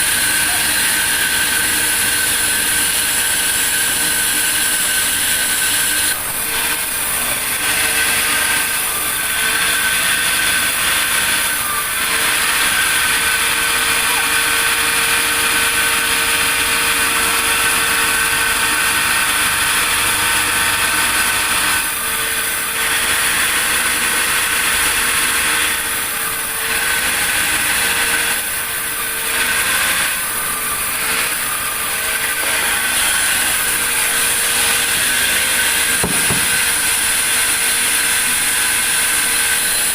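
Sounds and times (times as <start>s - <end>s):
sawmill saw whining: 0.0s - 39.9s.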